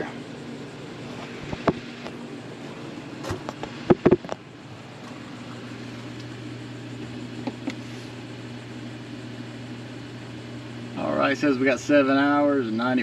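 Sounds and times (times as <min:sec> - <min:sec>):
mini fridge humming: 0:00.0 - 0:13.0
sharp handling knocks: 0:03.2 - 0:04.4.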